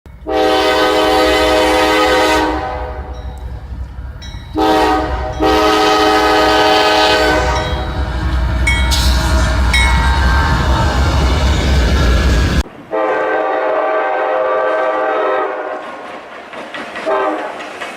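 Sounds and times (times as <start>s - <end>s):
train rumbling past: 0.1s - 17.9s
locomotive horn chord blasts: 0.2s - 3.4s, 4.6s - 10.0s, 12.9s - 15.8s
train wheel squeal: 7.4s - 12.6s.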